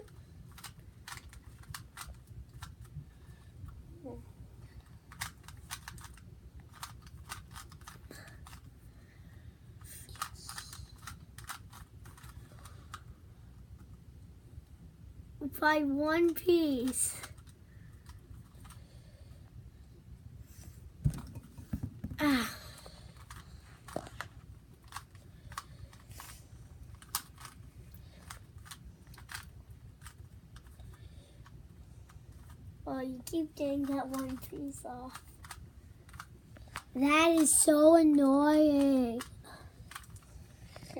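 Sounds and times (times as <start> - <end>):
steady low hum: 0.0 - 40.9
plastic puzzle cube clicking: 0.5 - 2.8, 5.1 - 8.6, 26.9 - 27.6, 35.1 - 36.3
puzzle cube twisting clicks: 26.9 - 27.6.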